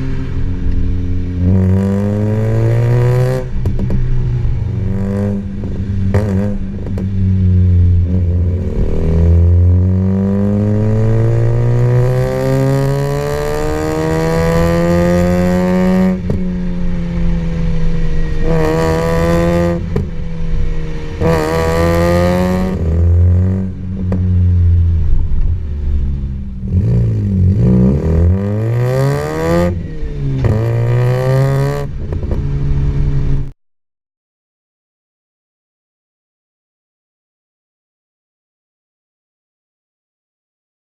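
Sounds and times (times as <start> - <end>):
car engine accelerating hard: 0.0 - 33.5.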